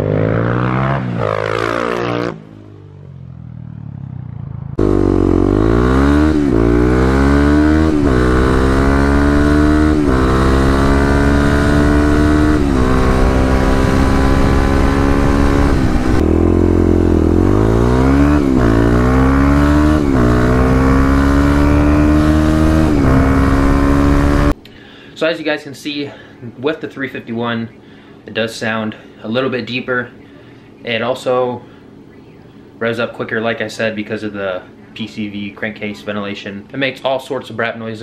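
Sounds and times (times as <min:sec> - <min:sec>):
motorcycle engine accelerating: 0:00.0 - 0:24.6.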